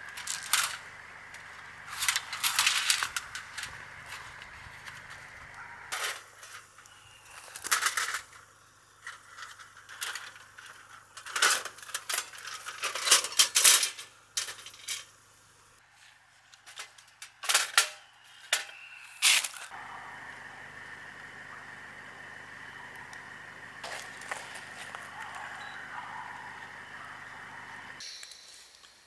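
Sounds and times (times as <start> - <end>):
small hard objects clinking: 0.0 - 5.2, 23.8 - 25.3.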